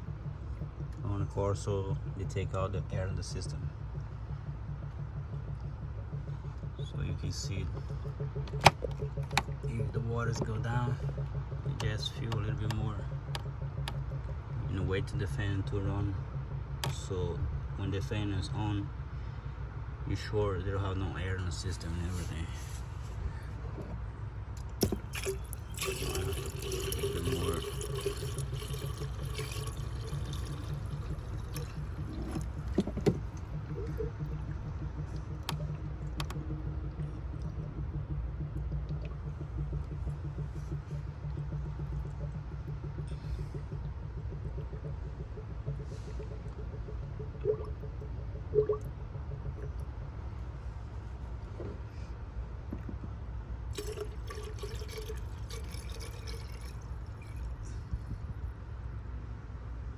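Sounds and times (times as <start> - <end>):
low steady rumble: 0.0 - 59.9
coolant pouring: 7.2 - 12.7, 24.6 - 49.8, 53.7 - 58.4
coolant pouring from a jug: 24.6 - 34.5, 53.7 - 58.1.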